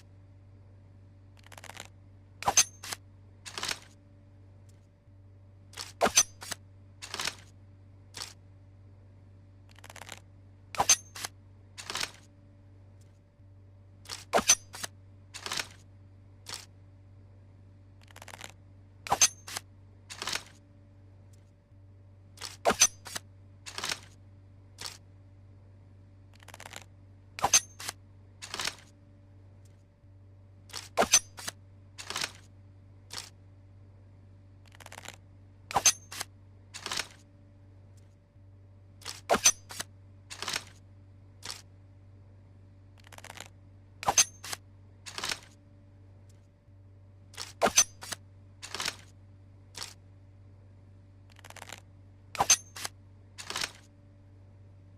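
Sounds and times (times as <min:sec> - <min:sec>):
steady low hum: 0:00.0 - 0:54.9.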